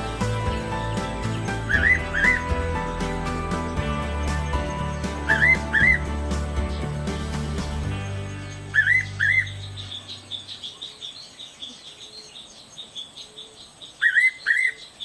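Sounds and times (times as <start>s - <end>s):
background music: 0.0s - 10.8s.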